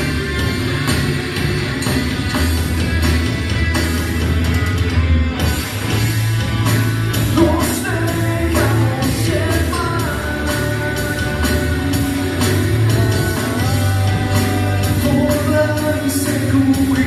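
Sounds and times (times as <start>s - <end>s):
rock band playing: 0.0s - 17.0s
person singing: 7.3s - 17.0s.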